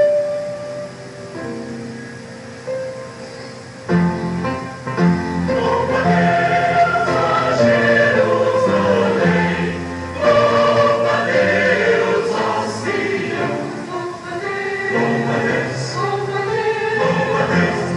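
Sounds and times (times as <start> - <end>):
choir singing a hymn: 5.3 - 17.9.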